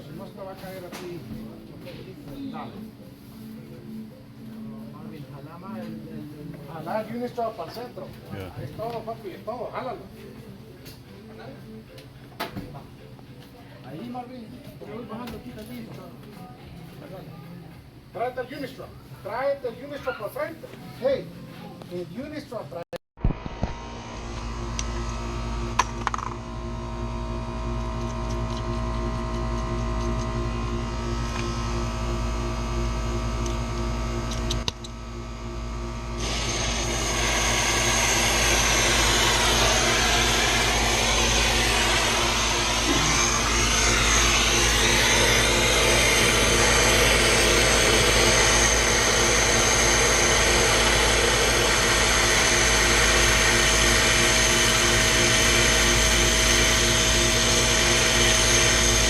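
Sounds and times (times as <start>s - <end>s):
machinery humming: 23.8s - 59.0s.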